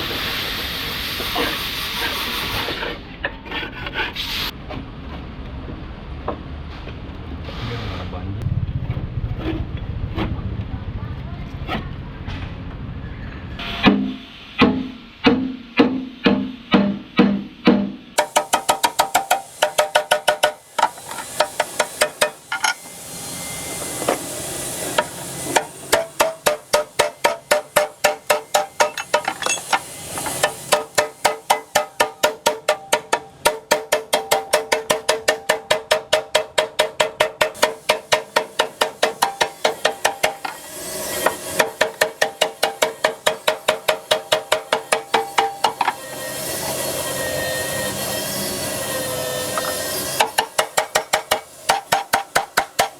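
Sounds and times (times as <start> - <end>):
hammer on sheet metal: 13.6 - 22.8, 25.0 - 46.8, 49.4 - 52.9
steady hiss: 18.2 - 32.8.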